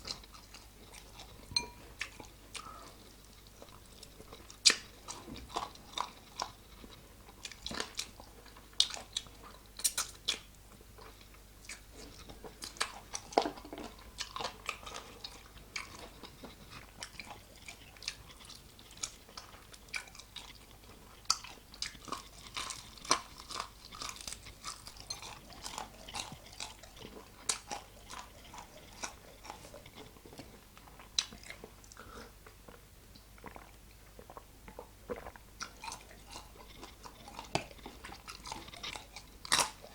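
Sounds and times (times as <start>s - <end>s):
chewing crispy chicken crunches: 2.1s - 32.8s, 33.4s - 39.9s
wet mouth clicks: 9.8s - 10.1s.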